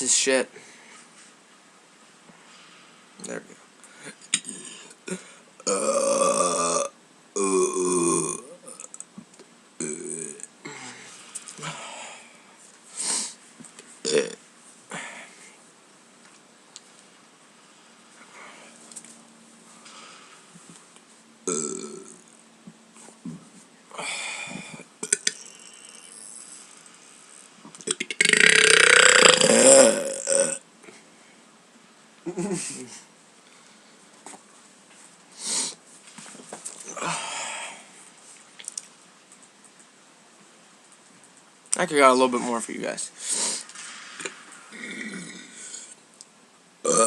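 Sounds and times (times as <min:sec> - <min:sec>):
man belching: 0:04.3 - 0:09.0, 0:09.8 - 0:10.5, 0:14.1 - 0:14.4, 0:21.5 - 0:22.2, 0:25.0 - 0:26.4, 0:27.9 - 0:30.6, 0:44.7 - 0:45.9
long loud burp: 0:04.4 - 0:08.9, 0:09.8 - 0:11.0, 0:14.1 - 0:14.4, 0:21.4 - 0:22.2, 0:25.0 - 0:26.4, 0:27.9 - 0:30.6, 0:44.7 - 0:46.0
breathy sound: 0:10.6 - 0:13.4, 0:36.9 - 0:38.0.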